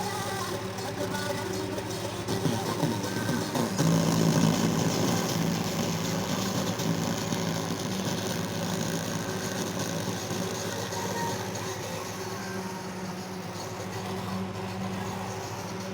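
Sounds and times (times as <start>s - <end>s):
subwoofer low bass hum: 3.8s - 10.7s.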